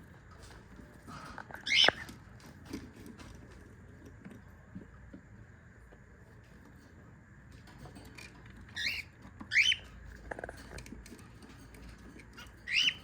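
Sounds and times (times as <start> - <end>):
cockatiel chirps: 1.6 - 2.0, 8.8 - 9.8, 12.7 - 13.0
light tapping and scratching: 5.9 - 13.0.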